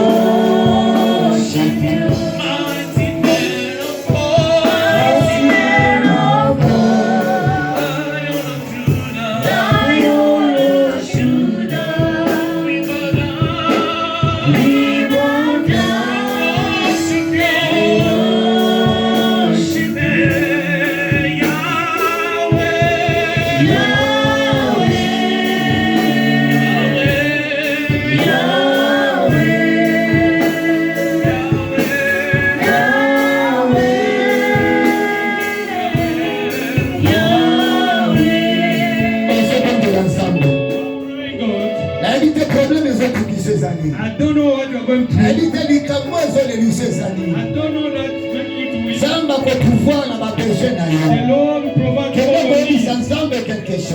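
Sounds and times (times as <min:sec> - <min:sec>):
gospel choir singing: 0:00.0 - 0:53.9.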